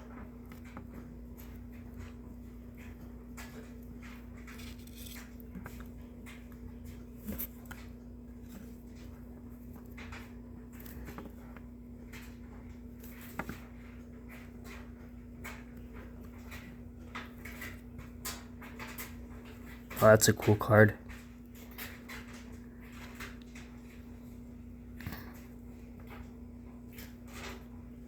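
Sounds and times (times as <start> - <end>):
cards rustling and clicking: 4.4 - 5.9.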